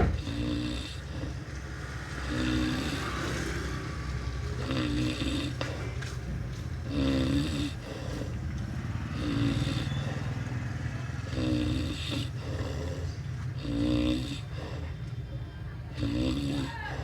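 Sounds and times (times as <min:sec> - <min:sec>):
vehicle low rumble: 0:00.0 - 0:17.0
person snoring: 0:00.2 - 0:01.5, 0:02.2 - 0:06.0, 0:06.8 - 0:08.4, 0:09.1 - 0:10.3, 0:11.2 - 0:15.0, 0:15.9 - 0:17.0.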